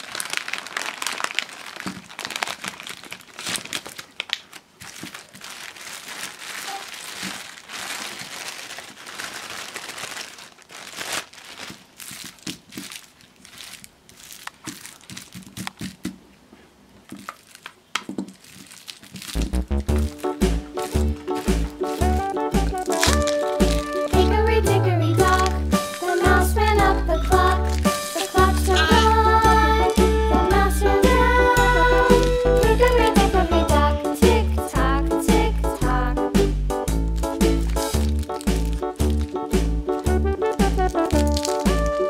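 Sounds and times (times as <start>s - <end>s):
packaging tearing: 0.0s - 16.1s, 17.1s - 24.3s, 27.6s - 29.0s, 36.9s - 42.0s
packaging crinkling and rustling: 0.0s - 16.2s, 17.0s - 24.3s, 27.2s - 29.0s, 36.9s - 42.0s
background music with steady beat: 19.9s - 42.0s.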